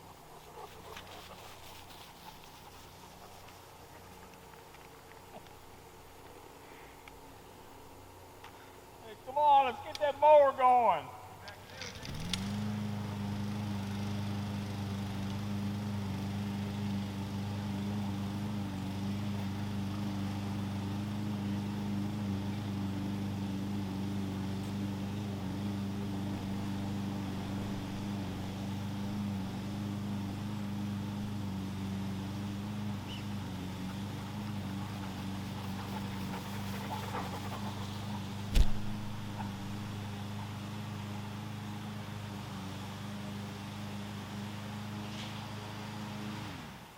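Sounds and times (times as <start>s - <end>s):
push mower engine running: 11.6s - 46.9s.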